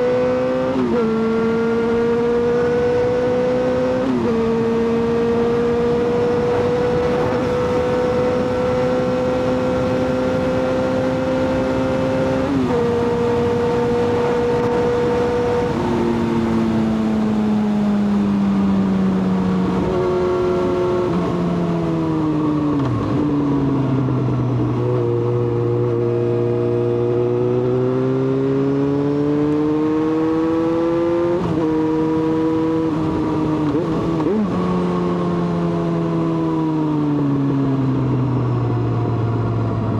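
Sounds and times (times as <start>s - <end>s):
wind noise: 0.0s - 27.7s
motorcycle engine accelerating: 0.0s - 39.9s.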